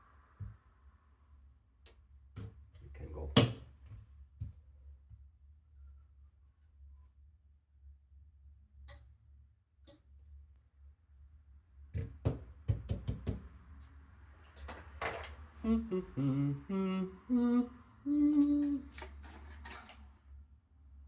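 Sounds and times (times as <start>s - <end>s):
man humming a tune: 15.6s - 19.0s.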